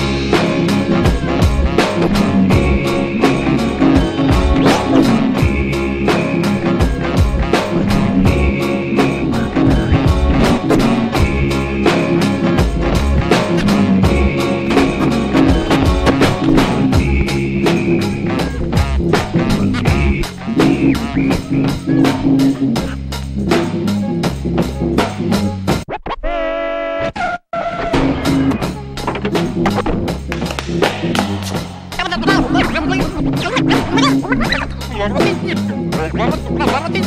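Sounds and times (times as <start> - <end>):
rock music with drums and guitar: 0.0 - 25.8.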